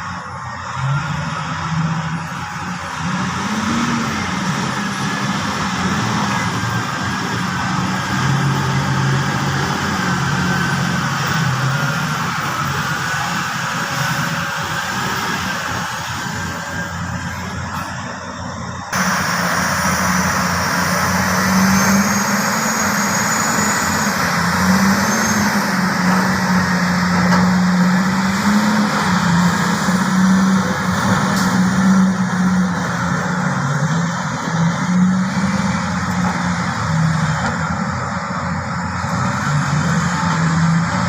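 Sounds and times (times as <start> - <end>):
excavator diesel engine droning: 0.0 - 41.0.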